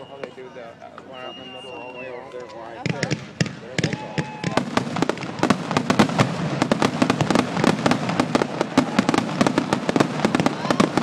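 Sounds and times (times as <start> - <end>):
fireworks crackling bangs: 2.8 - 11.0.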